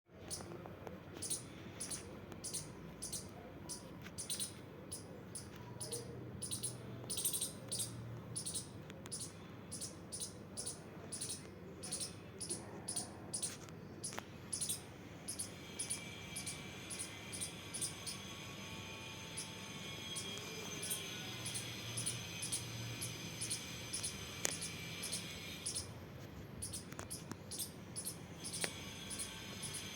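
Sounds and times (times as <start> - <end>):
squirrel chirping: 0.2 - 26.0, 26.6 - 29.9.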